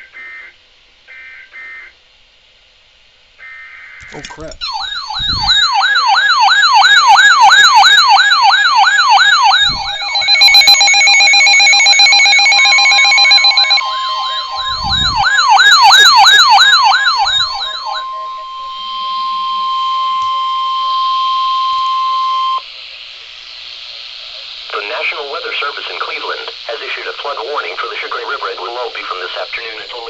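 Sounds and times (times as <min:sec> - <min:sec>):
electronic siren yelping: 0:03.4 - 0:22.6
steady single-pitch alert tone: 0:04.4 - 0:22.7
pulsing tone: 0:04.6 - 0:22.6.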